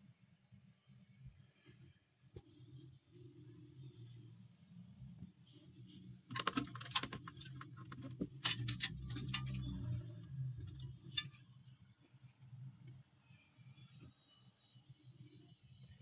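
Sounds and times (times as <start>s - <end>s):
low steady hum: 0.0s - 16.0s
sharp clicks and light rattles: 6.3s - 11.5s.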